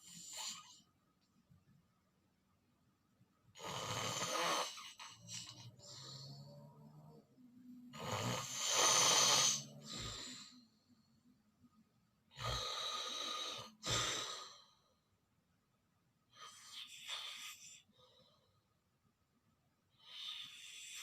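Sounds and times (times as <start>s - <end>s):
person snoring: 3.6s - 7.2s, 7.9s - 10.7s, 12.3s - 14.7s.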